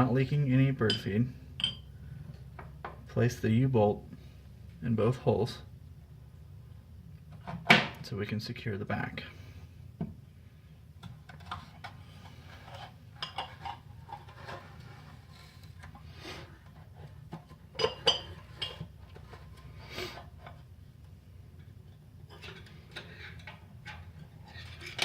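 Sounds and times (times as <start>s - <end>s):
metal bolt clinking and scraping: 22.3s - 25.0s.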